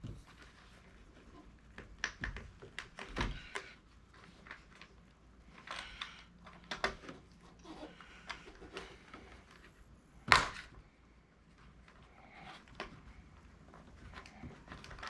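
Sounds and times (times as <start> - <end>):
plastic parts clicking and knocking: 0.0 - 9.7.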